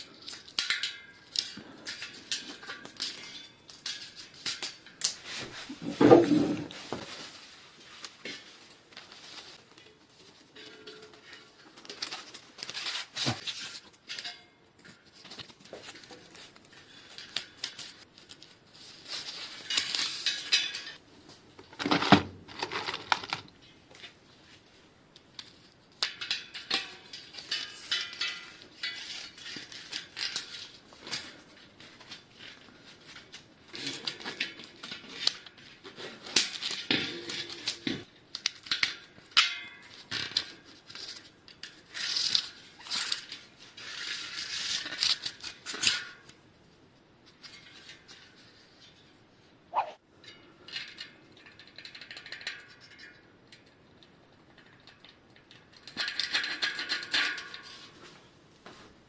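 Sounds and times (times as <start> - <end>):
metal clinking and scraping: 0.0 - 21.0, 25.4 - 46.3, 54.6 - 58.2.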